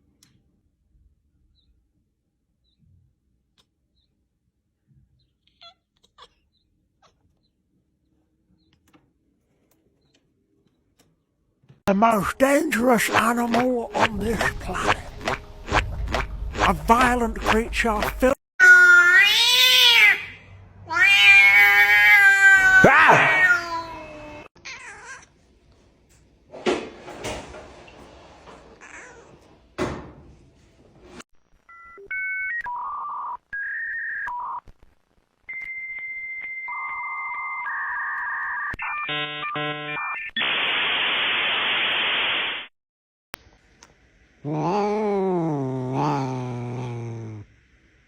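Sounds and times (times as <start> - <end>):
cat meowing: 18.7 - 25.2
electronic beeps and tones: 36.7 - 40.7.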